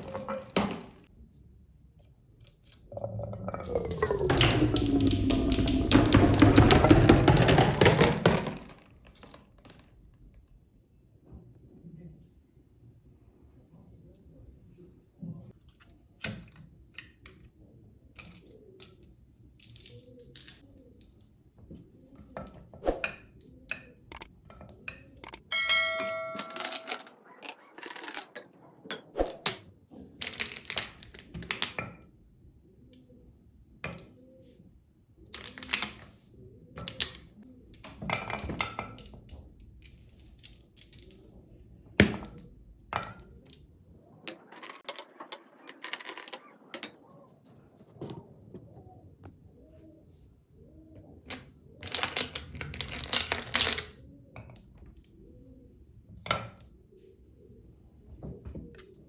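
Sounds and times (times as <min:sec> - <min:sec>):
marbles rolling and clacking: 0:03.4 - 0:09.8, 0:24.9 - 0:29.6, 0:44.2 - 0:47.9, 0:51.3 - 0:53.9.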